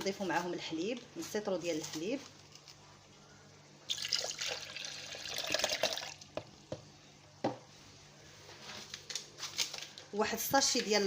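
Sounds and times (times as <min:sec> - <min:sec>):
milk pouring into blender jar: 0:03.9 - 0:06.5.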